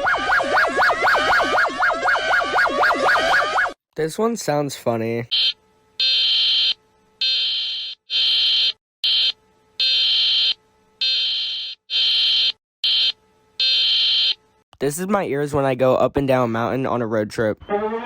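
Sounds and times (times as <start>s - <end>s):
emergency alert buzzing beeps: 5.3s - 14.4s.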